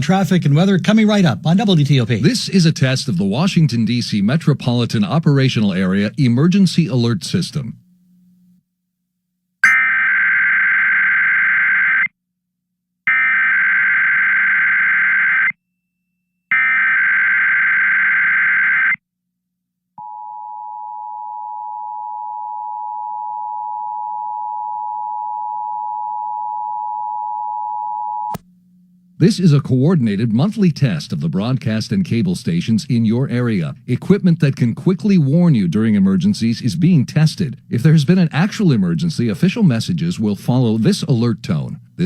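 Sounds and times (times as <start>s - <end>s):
two-tone attention signal: 9.6s - 9.9s.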